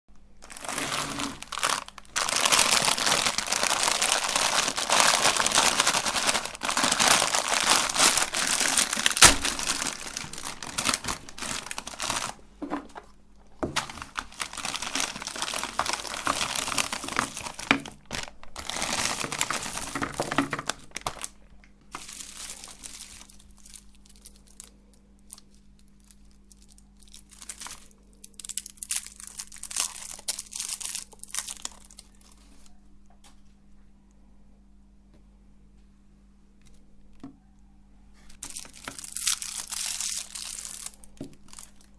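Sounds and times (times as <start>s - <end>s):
faint steady hum: 0.1s - 41.9s
plastic packaging crinkling: 0.3s - 32.7s, 38.3s - 41.9s.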